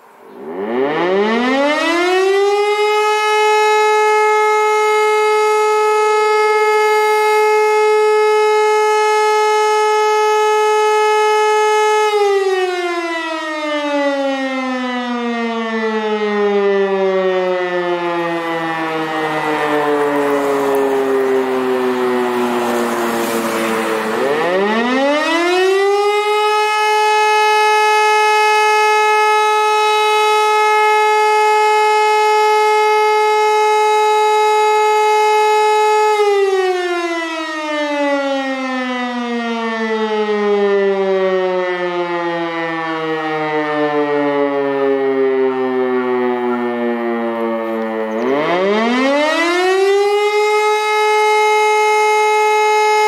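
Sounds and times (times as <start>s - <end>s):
electromechanical siren howling: 0.0s - 53.0s.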